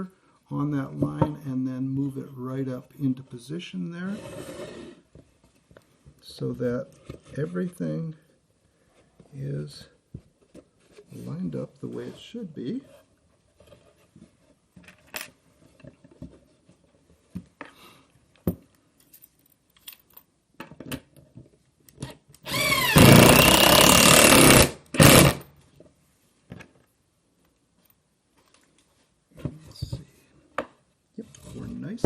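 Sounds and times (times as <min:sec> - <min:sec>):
knocks and handling of wooden pieces: 0:13.4 - 0:22.4, 0:24.4 - 0:32.0
cordless drill driving screw into wood: 0:22.4 - 0:25.5.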